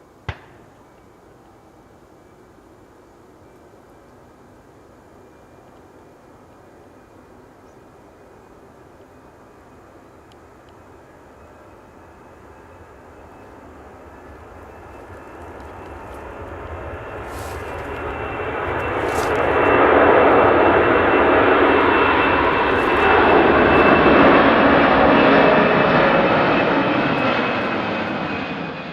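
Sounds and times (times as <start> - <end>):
jet engines roaring at takeoff: 2.8 - 28.9.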